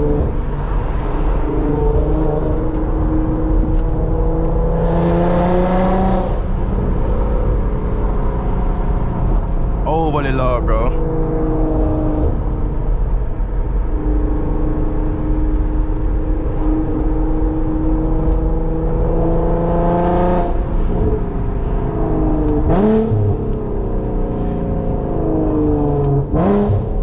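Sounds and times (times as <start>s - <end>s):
car engine and loud exhaust: 0.0s - 27.0s.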